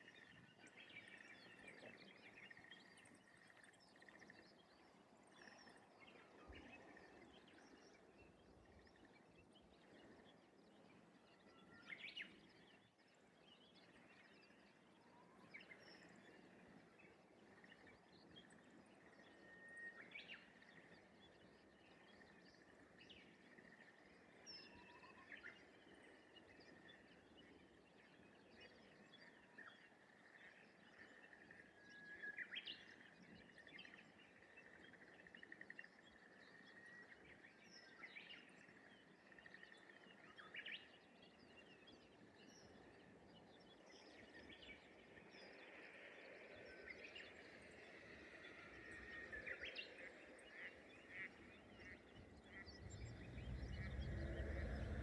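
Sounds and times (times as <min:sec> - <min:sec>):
distant bird calls: 0:44.8 - 0:55.0.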